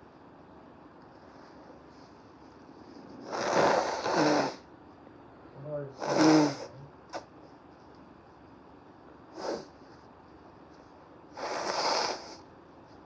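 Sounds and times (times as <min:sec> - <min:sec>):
person blowing nose: 0:03.2 - 0:04.6, 0:06.0 - 0:06.7, 0:09.4 - 0:09.7, 0:11.4 - 0:12.4.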